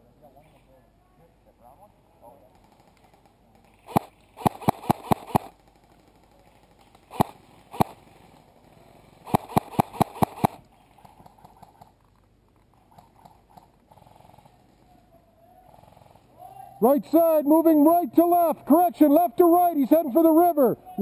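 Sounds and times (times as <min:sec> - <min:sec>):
airsoft rifle shots: 0:02.6 - 0:06.3, 0:07.0 - 0:08.0, 0:09.2 - 0:10.7.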